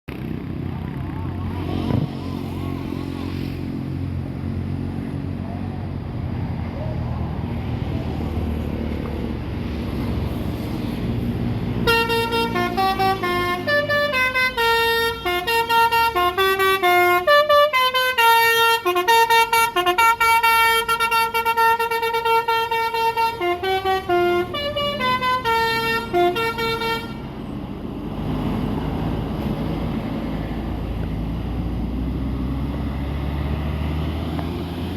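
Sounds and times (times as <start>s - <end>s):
musical air horn tune: 11.8s - 27.2s.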